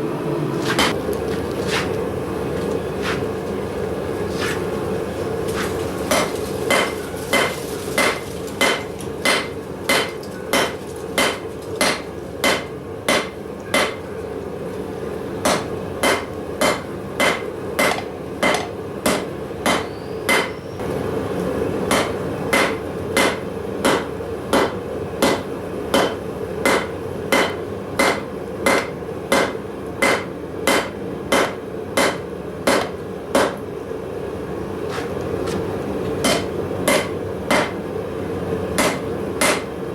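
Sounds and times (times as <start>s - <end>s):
steady hum: 0.0s - 39.9s
hammer striking steel on anvil: 6.1s - 14.0s, 15.4s - 20.6s, 21.9s - 33.6s, 36.2s - 37.8s, 38.8s - 39.7s.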